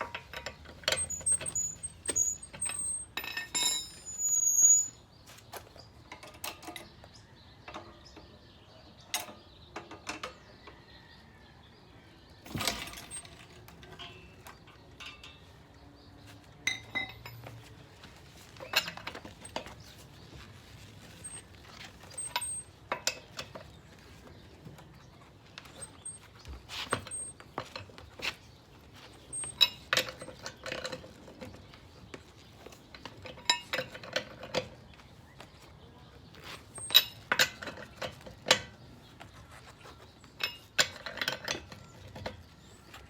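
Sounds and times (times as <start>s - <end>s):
metal tools clinking and knocking: 0.0s - 5.0s, 6.0s - 8.4s, 12.4s - 17.8s, 18.5s - 20.0s, 21.0s - 24.8s, 25.6s - 28.3s, 29.1s - 34.8s, 36.4s - 38.8s, 39.8s - 43.0s.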